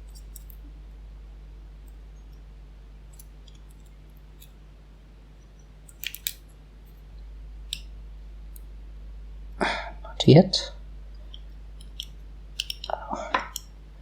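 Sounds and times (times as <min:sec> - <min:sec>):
low steady hum: 0:00.0 - 0:14.0
lock pick metal clicks: 0:00.1 - 0:00.6, 0:05.9 - 0:06.4, 0:11.3 - 0:13.8.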